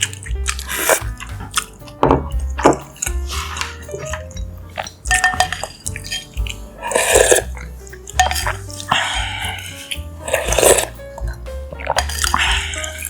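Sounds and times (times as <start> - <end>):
wet eating sounds: 0.0 - 13.0
spoon scraping a bowl: 2.6 - 11.0.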